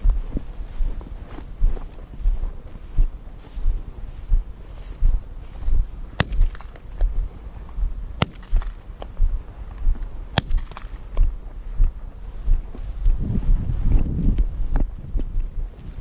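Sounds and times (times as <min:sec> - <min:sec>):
wind noise on microphone: 0:00.0 - 0:16.0
sharp cracks: 0:06.2 - 0:07.2, 0:08.2 - 0:11.3.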